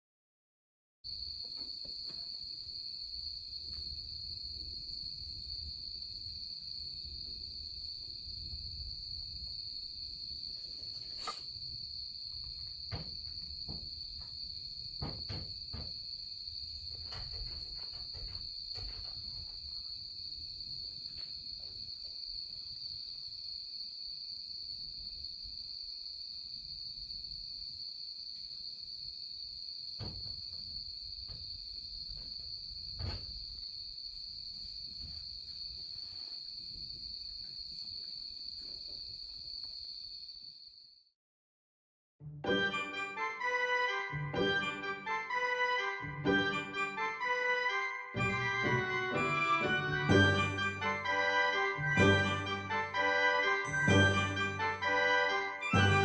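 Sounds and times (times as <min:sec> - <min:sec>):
high-pitched insect chorus: 0:01.1 - 0:41.1.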